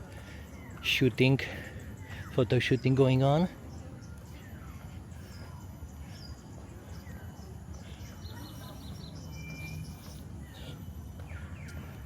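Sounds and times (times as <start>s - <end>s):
bird chirps and calls: 0.2s - 12.0s.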